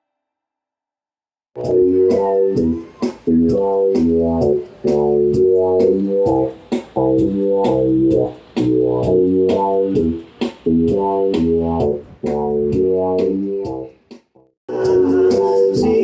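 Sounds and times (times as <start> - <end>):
band playing instrumental music: 1.6 - 13.9
steady drum beat: 1.6 - 16.0.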